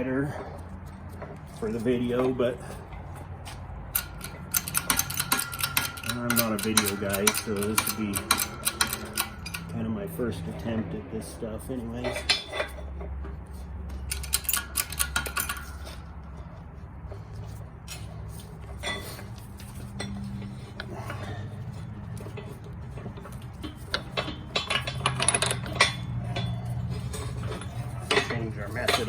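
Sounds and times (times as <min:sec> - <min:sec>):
low steady hum: 0:00.0 - 0:29.0
metal parts clinking: 0:03.9 - 0:09.8, 0:14.0 - 0:16.1, 0:17.9 - 0:29.0.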